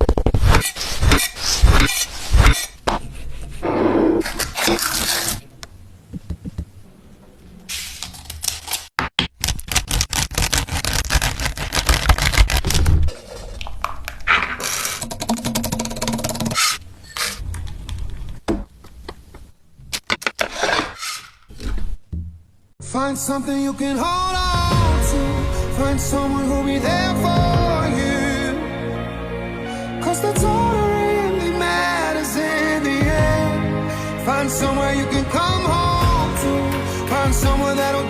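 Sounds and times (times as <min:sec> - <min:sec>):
rapid clicking: 0:14.9 - 0:16.8.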